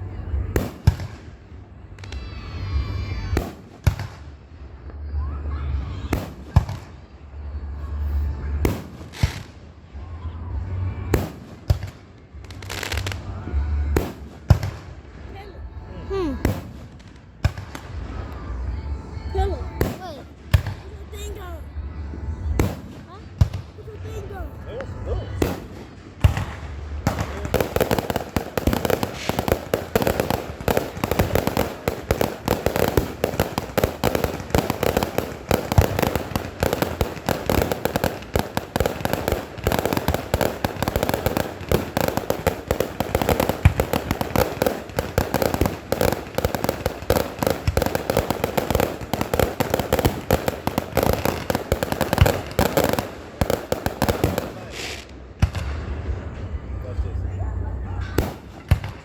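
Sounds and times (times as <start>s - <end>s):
rapid crackling and popping: 25.4s - 55.7s.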